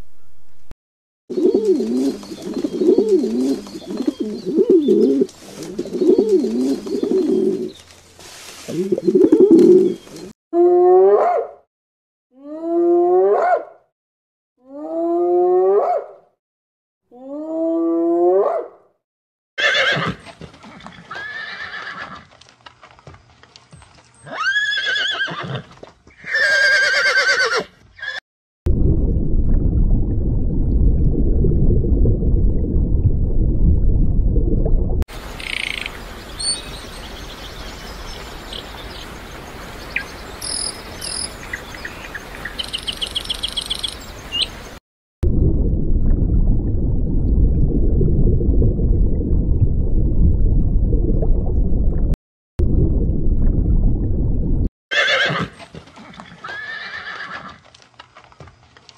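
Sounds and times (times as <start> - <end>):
outdoor ambience: 1.3 - 10.3, 19.6 - 51.8, 52.6 - 58.9
loud low rumbling noise: 28.7 - 35.3, 45.2 - 54.7.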